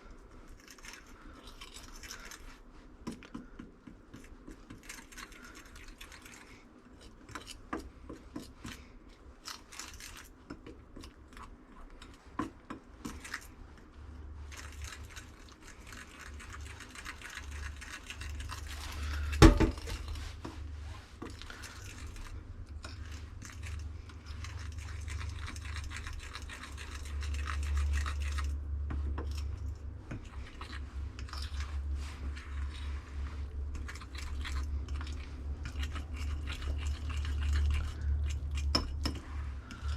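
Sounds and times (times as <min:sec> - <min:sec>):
loud knock: 0:19.4 - 0:19.9.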